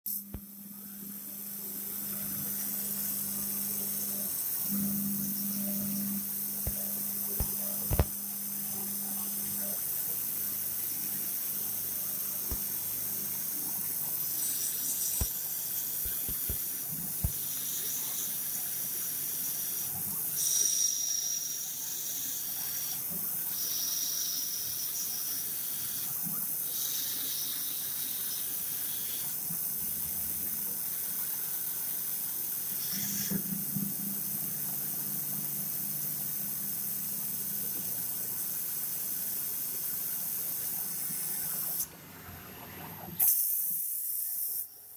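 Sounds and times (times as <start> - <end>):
steady hiss: 10.1 - 26.0
sharp machine clicks: 14.2 - 17.7.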